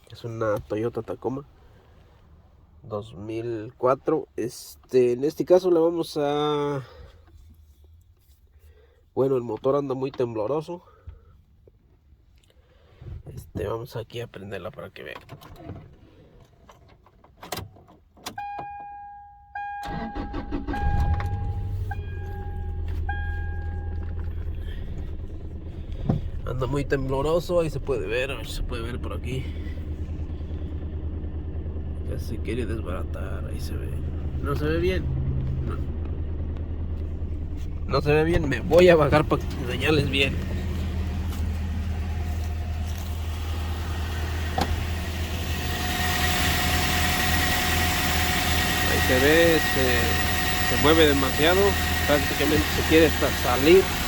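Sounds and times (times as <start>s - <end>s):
dashboard warning chime: 18.4s - 24.9s
engine cranking and starting: 19.8s - 54.0s
steady whine: 20.5s - 54.0s
engine idling rough: 20.6s - 54.0s.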